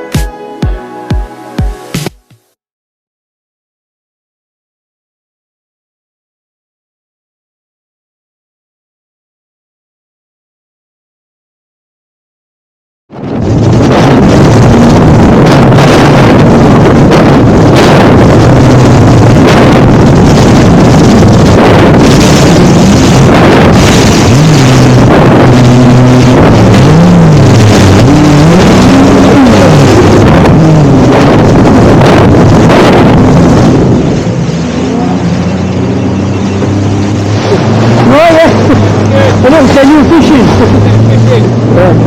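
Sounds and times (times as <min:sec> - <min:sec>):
jet ski engine running: 0:13.2 - 0:42.0
water rushing: 0:13.2 - 0:42.0.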